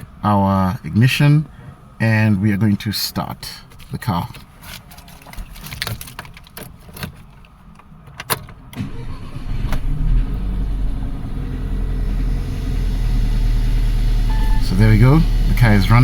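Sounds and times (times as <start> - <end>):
car engine cranking and starting: 3.6 - 16.0
engine running with misfire: 8.8 - 16.0.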